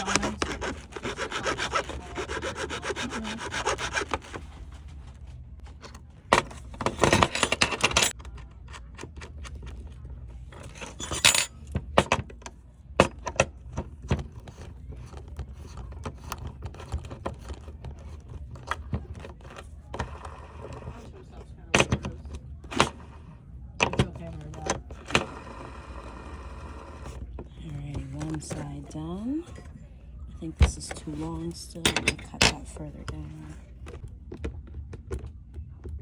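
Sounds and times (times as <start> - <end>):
saw cutting: 0.0 - 4.2.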